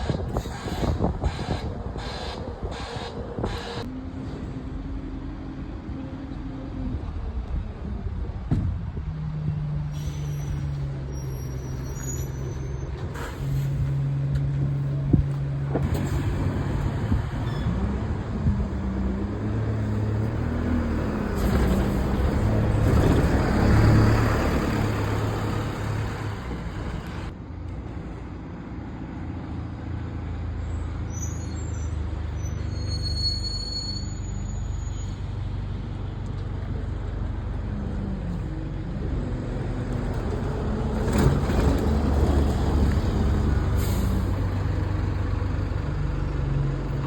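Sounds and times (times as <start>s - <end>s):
bus engines running: 0.0s - 47.0s
air brakes hissing: 9.9s - 14.1s, 43.6s - 44.6s.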